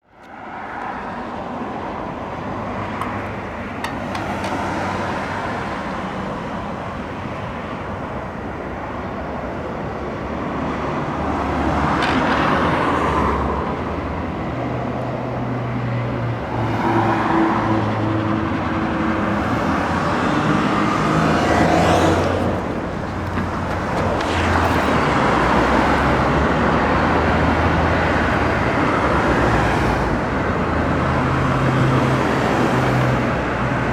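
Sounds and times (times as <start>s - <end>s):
road traffic hum: 0.0s - 33.9s
vehicles passing close by: 0.1s - 33.9s.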